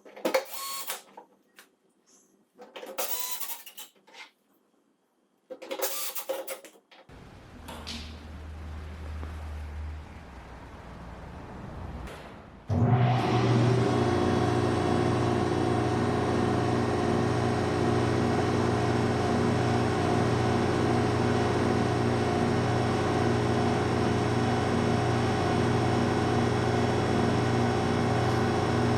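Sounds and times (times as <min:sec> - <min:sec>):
jointer machine humming: 0:07.1 - 0:12.1.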